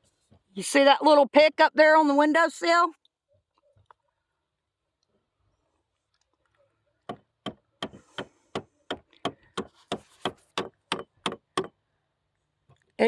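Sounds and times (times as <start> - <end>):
hammer strikes: 7.1 - 11.8.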